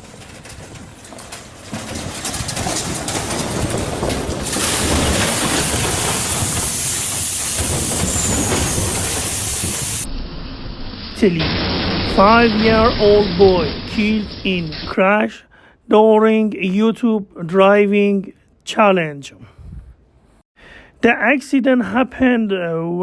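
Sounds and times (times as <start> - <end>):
rapid clicking: 0.0 - 10.1
rushing rumble: 0.0 - 15.1.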